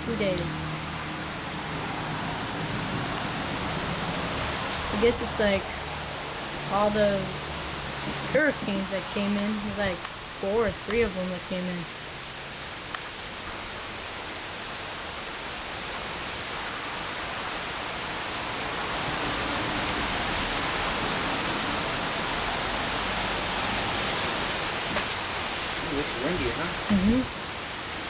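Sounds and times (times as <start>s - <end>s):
strong wind gusts: 0.0s - 12.2s, 16.4s - 28.0s
heavy rain pouring: 0.0s - 28.0s.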